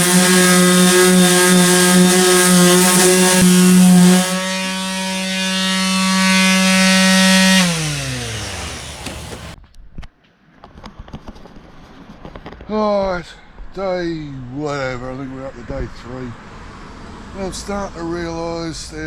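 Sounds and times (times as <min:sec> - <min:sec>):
abrasive rasping on paint: 0:00.0 - 0:09.6
power sander whining: 0:00.0 - 0:09.6.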